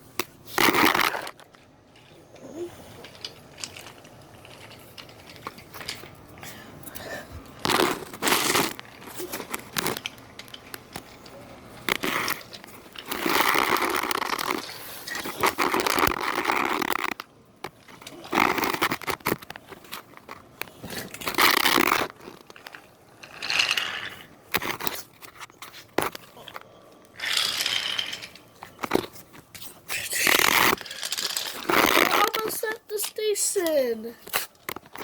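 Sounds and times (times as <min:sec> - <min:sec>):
toy train rattling on wooden track: 0:01.0 - 0:06.2, 0:20.8 - 0:25.1, 0:27.2 - 0:35.0.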